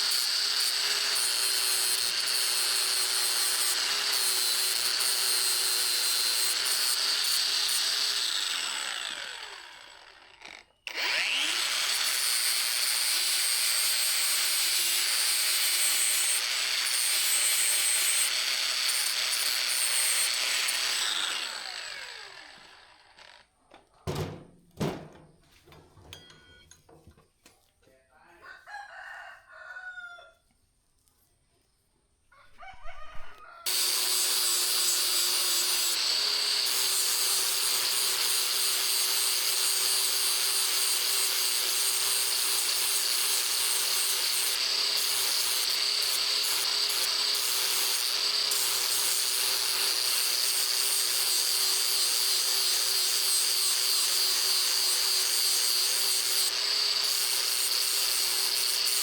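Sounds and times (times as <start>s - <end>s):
power tool whining on metal: 0.0s - 23.5s, 33.6s - 59.0s
rooster crowing: 28.4s - 30.4s, 32.3s - 33.7s.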